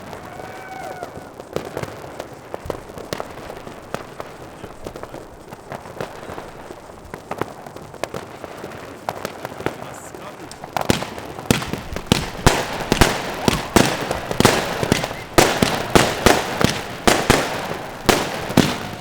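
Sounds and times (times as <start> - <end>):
distant fireworks bangs: 0.0 - 19.0
firecracker and rocket cracks: 0.0 - 19.0.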